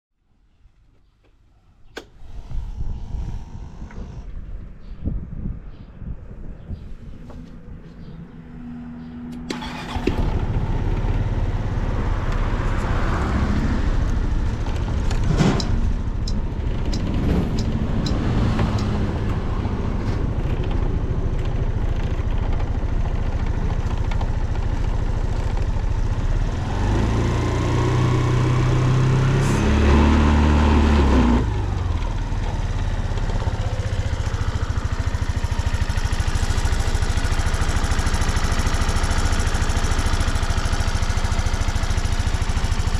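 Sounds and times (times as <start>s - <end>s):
scooter engine starting and idling: 9.0s - 42.9s
scooter engine revving: 9.3s - 42.9s.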